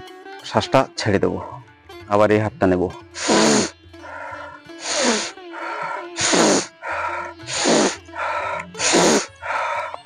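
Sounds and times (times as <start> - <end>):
soft background music: 0.0 - 3.8
person breathing hard: 3.2 - 10.0.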